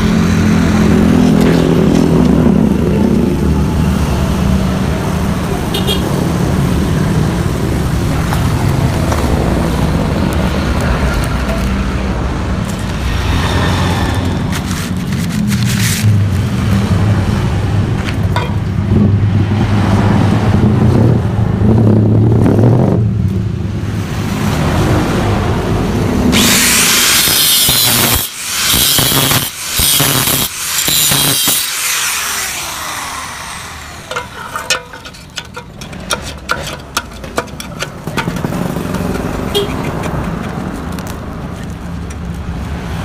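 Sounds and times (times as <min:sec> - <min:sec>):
harsh grinding: 0:26.3 - 0:42.4
sharp clicks and crackles: 0:34.1 - 0:42.8.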